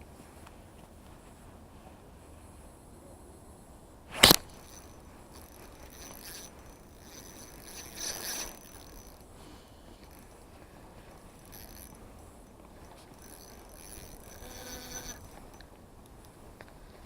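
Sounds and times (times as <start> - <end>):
soft hissing rustle: 0.0 - 17.0
fishing rod swishing: 4.1 - 9.2, 10.0 - 12.1, 12.9 - 15.6.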